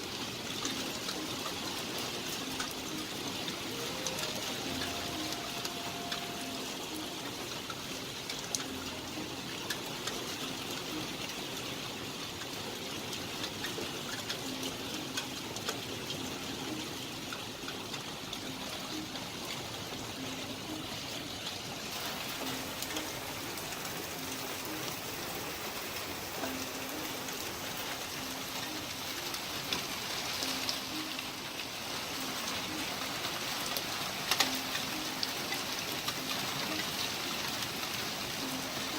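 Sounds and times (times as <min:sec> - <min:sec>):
heavy rain falling: 0:00.0 - 0:38.9
water drips and splashes: 0:00.0 - 0:38.9.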